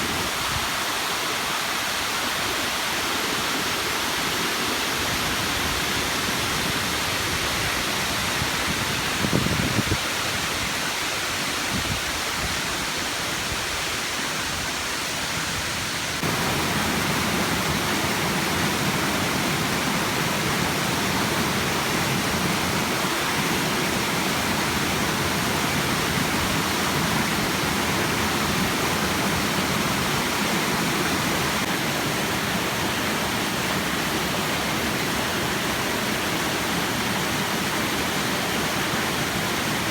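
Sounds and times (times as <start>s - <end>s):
waterfall rushing: 10.0s - 39.9s.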